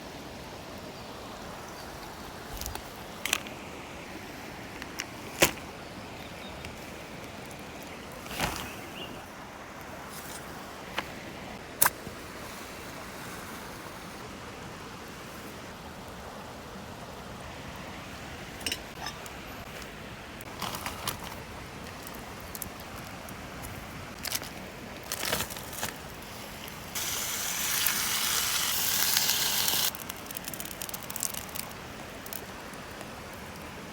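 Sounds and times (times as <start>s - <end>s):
mountain stream rushing: 0.0s - 33.9s
loud hiss: 26.9s - 31.1s.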